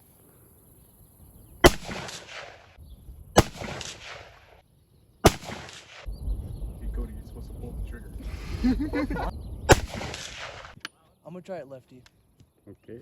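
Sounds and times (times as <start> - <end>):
rifle shots with echo: 1.6 - 2.8, 3.4 - 4.6, 5.2 - 6.2, 9.7 - 10.8.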